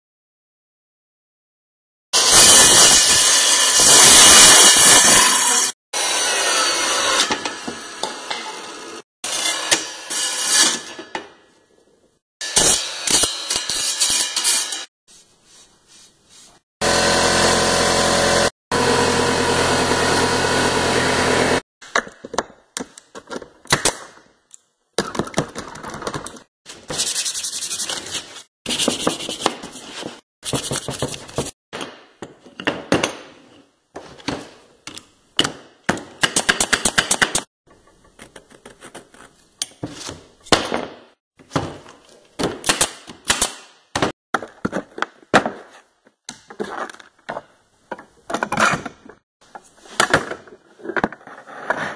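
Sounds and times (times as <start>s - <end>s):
power tool motor running: 16.8s - 21.6s.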